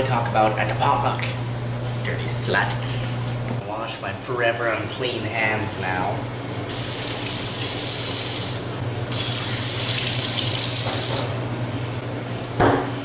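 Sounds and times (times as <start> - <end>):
tap running: 9.2 - 11.6.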